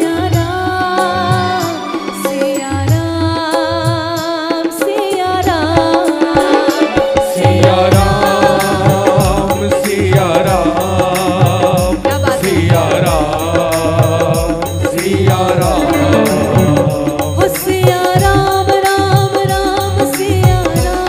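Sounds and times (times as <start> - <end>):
hand drum beat: 0.0 - 21.0
sustained accompaniment: 0.9 - 3.3, 10.8 - 18.4.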